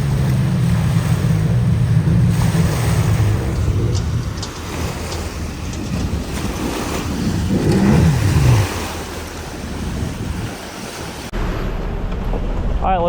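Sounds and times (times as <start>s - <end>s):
jet ski engine revving: 0.0s - 11.3s
rushing water: 0.0s - 11.9s
wind: 0.0s - 13.0s.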